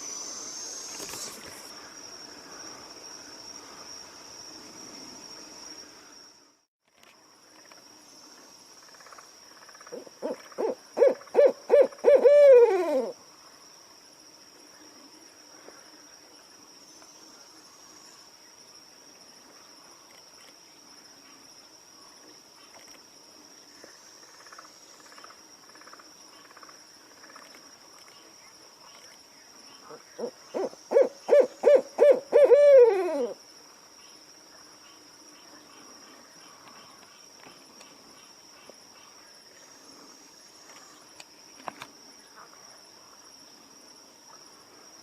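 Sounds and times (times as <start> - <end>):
high-pitched insect trill: 0.0 - 45.0
owl hooting: 9.9 - 13.2, 30.2 - 33.4.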